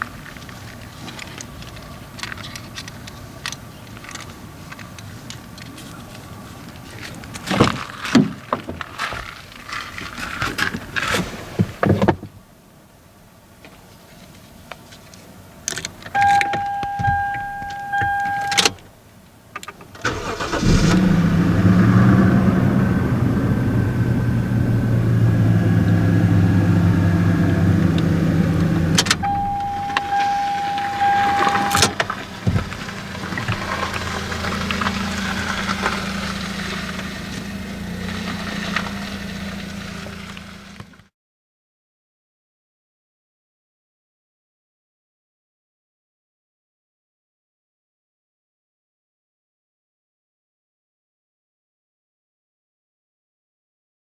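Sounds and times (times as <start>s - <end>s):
car engine starting and idling: 15.8s - 18.9s, 19.6s - 41.0s
electronic warning tone: 16.2s - 18.7s, 29.2s - 32.0s.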